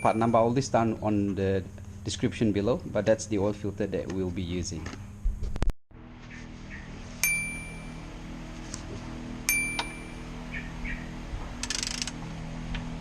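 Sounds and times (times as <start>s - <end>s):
ringing metallic clinks: 0.0s - 0.6s, 7.2s - 8.1s, 9.5s - 10.3s
steady low hum: 0.0s - 13.0s.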